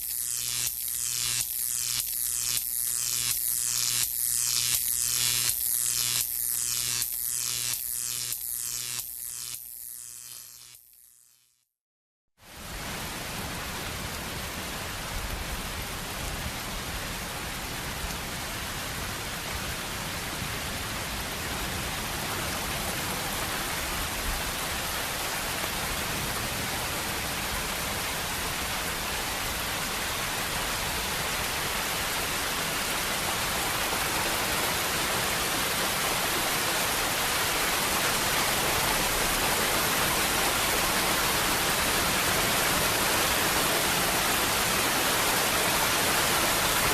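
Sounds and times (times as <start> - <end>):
heavy rain: 12.5 - 46.9.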